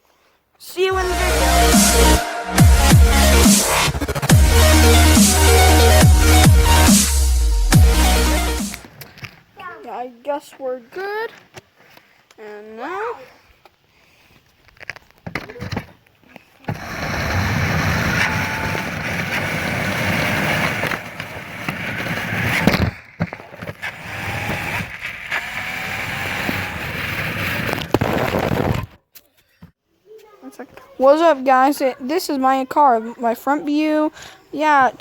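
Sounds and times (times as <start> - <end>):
rc car wheels rattling: 22.2 - 28.0.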